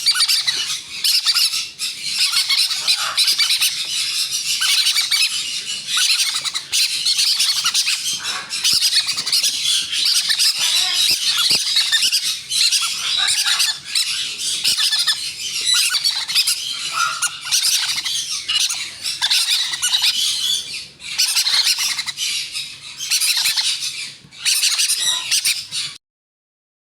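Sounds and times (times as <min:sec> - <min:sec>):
parrot chicks squawking: 0:00.0 - 0:26.0.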